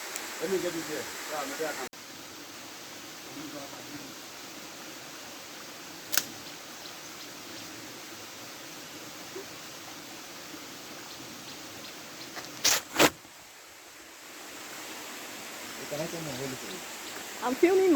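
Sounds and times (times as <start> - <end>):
waterfall rushing: 0.0 - 1.9, 14.1 - 17.9
sharp click: 6.1 - 6.3.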